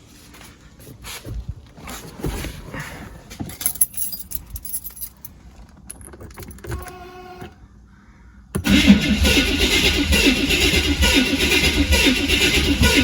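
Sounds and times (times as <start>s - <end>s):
light metallic jingling: 3.5s - 6.6s.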